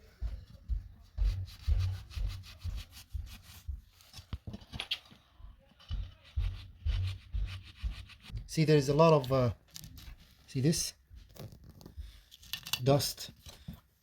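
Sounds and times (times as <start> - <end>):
dull bumps: 5.9 - 8.5.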